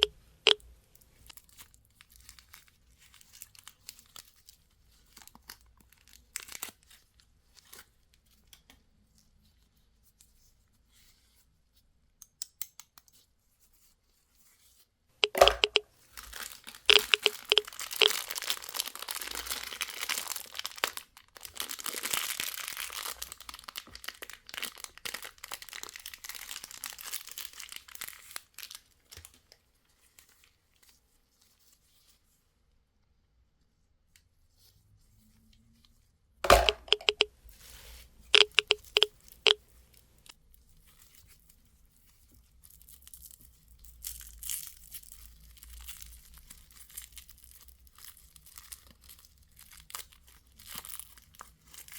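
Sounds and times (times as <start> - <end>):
candy wrapper crinkling: 16.2 - 28.8, 42.6 - 51.9.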